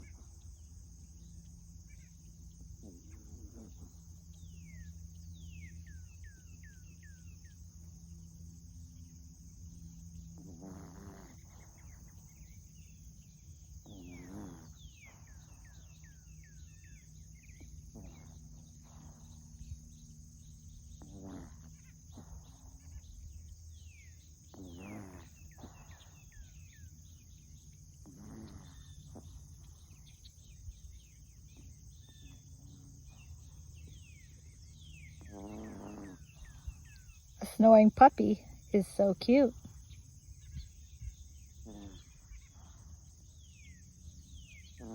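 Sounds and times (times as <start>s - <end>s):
puppy snoring: 10.4s - 11.7s, 13.9s - 15.0s, 28.0s - 29.4s, 35.3s - 36.3s.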